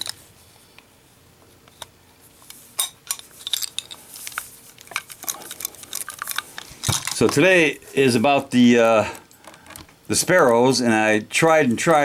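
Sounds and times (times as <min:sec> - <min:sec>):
small metal objects clinking: 0:02.8 - 0:07.4.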